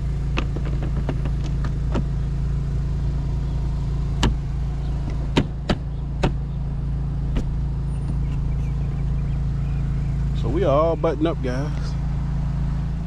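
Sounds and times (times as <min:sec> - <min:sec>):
engine humming: 0:00.0 - 0:13.0
sharp knocks: 0:05.3 - 0:06.4.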